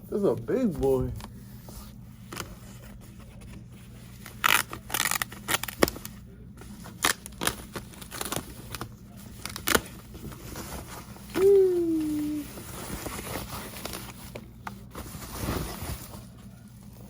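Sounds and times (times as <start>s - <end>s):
packaging being cut and handled: 4.2s - 6.1s, 9.4s - 10.0s.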